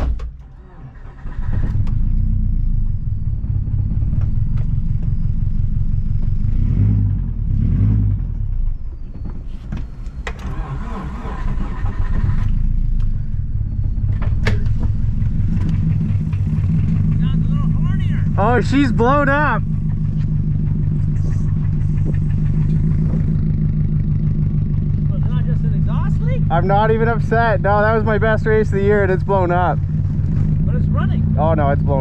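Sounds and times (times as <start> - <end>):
car engine running rough: 0.0 - 32.0
engine rattling knock: 13.0 - 32.0.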